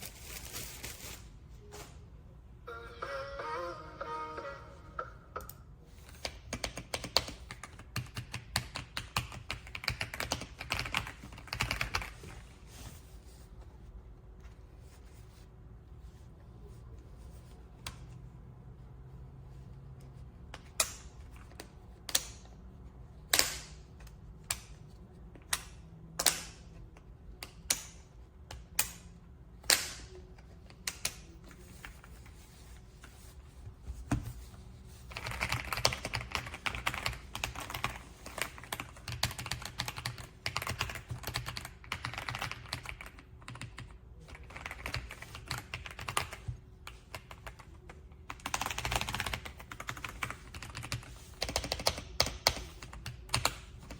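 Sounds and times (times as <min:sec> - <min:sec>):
fast keyboard typing: 0:06.2 - 0:12.4, 0:35.0 - 0:53.9.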